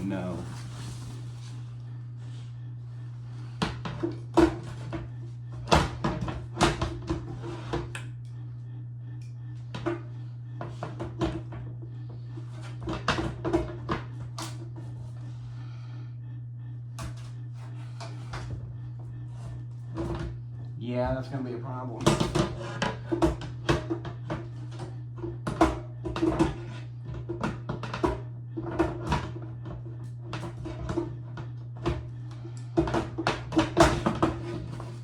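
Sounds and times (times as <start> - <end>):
steady low hum: 0.0 - 35.0.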